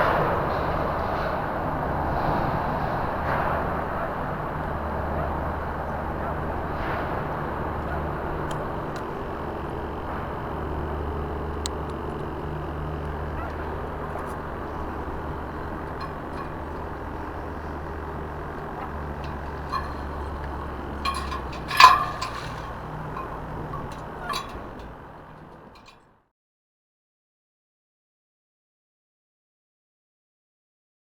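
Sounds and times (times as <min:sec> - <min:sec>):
outdoor noise: 0:00.0 - 0:26.2
low engine drone: 0:00.6 - 0:25.9
sharp clattering knocks: 0:06.5 - 0:25.9.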